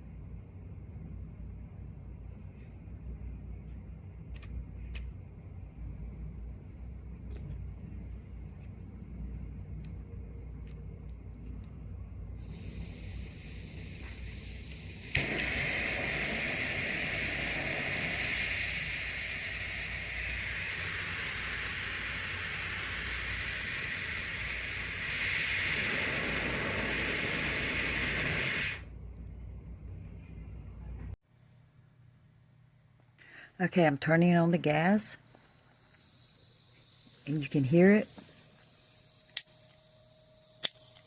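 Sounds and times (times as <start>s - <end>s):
butane torch hissing: 12.4s - 28.9s, 35.2s - 41.0s
sharp click: 39.3s - 39.8s, 40.6s - 41.0s.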